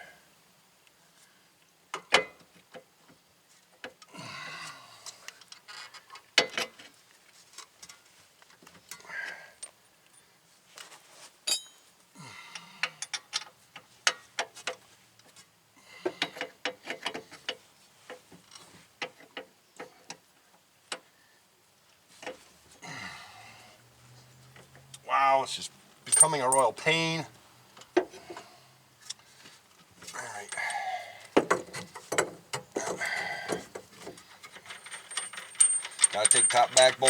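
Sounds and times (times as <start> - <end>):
tools and hardware clinking: 11.5 - 11.9, 26.1 - 27.0, 30.1 - 30.8, 31.4 - 37.0.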